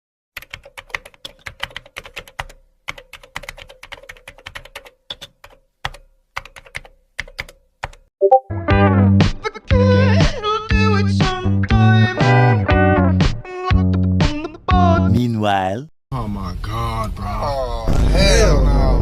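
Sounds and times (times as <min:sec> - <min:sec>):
computer keyboard typing: 0:00.4 - 0:08.1.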